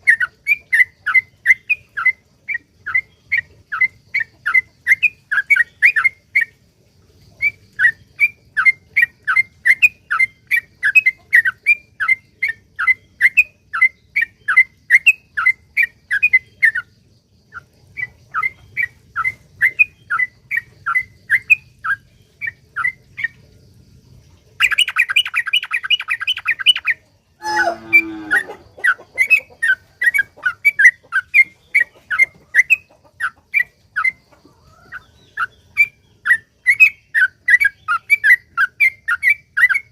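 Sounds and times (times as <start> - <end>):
falling bird call: 27.4 - 29.5.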